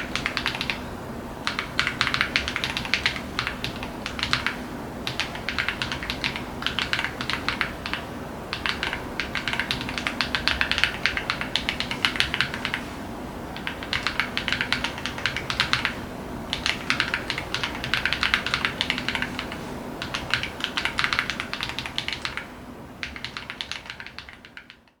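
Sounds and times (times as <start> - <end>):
keyboard typing: 0.0 - 25.0.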